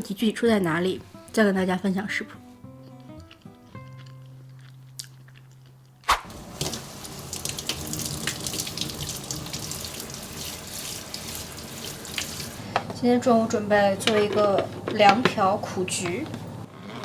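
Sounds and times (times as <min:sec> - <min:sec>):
water splashing into sink: 0:06.1 - 0:12.6.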